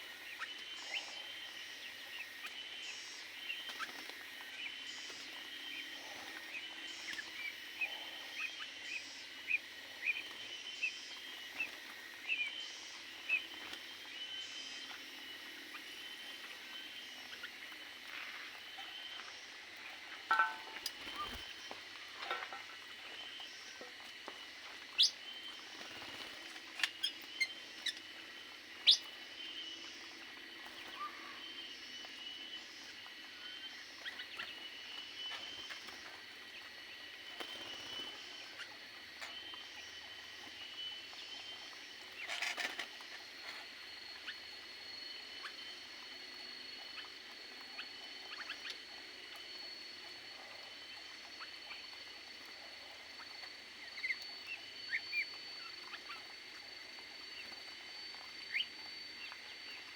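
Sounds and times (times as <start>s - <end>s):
small birds chirping: 0.0s - 59.9s.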